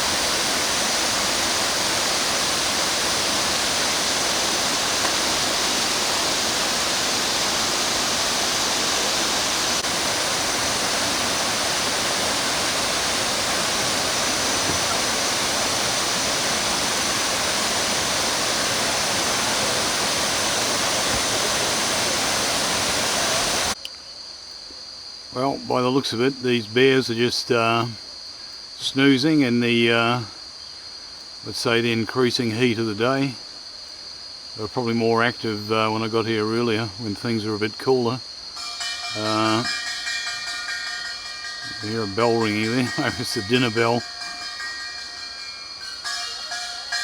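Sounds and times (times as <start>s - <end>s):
waterfall rushing: 0.0s - 23.8s, 41.6s - 46.1s.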